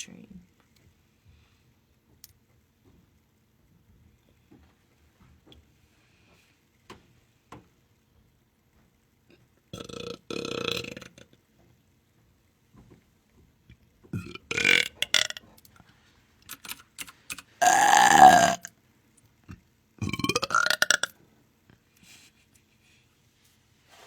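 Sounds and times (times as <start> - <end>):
person belching: 9.8 - 11.2, 14.2 - 15.4, 17.6 - 18.7, 20.0 - 21.1.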